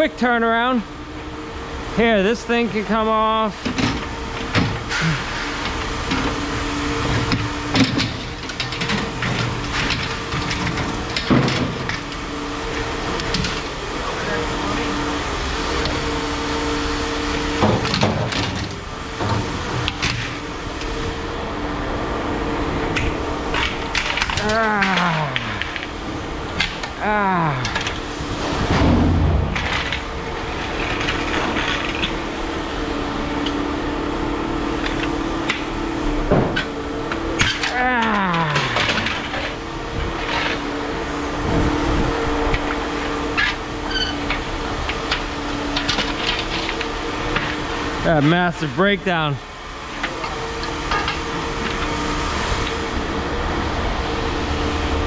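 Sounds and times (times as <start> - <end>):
steady hum: 0.0 - 55.0
scrap metal knocks and clanks: 3.6 - 14.3.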